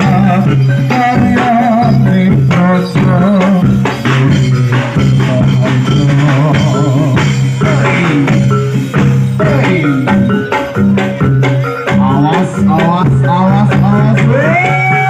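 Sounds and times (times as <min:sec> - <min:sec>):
drums beating densely: 0:00.0 - 0:15.0
held low tones: 0:00.0 - 0:15.0
wavering sliding melody: 0:00.0 - 0:15.0.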